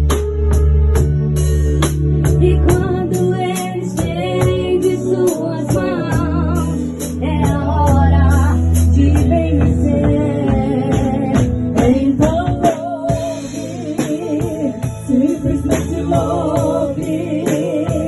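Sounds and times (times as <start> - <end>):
electronic keyboard gospel music: 0.0 - 18.0.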